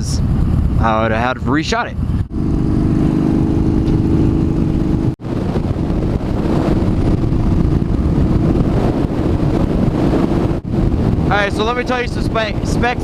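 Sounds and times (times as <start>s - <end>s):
motorcycle engine running: 2.0s - 11.3s.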